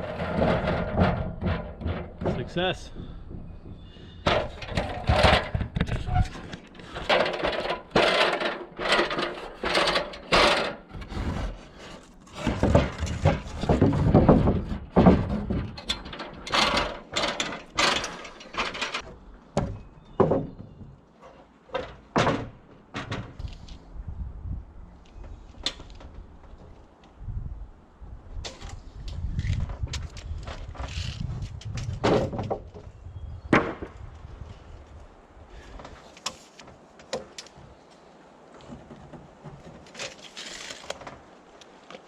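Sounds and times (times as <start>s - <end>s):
irregular knocks and clunks: 0.0s - 23.6s, 28.4s - 34.0s, 38.5s - 40.2s.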